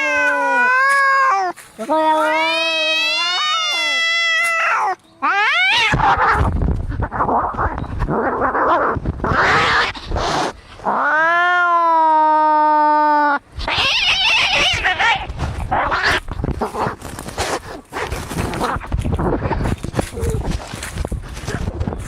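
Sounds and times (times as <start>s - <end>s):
cat yowling: 0.0s - 6.5s, 8.3s - 10.0s, 10.9s - 16.2s
cats hissing and spitting: 5.7s - 11.1s, 13.6s - 20.7s.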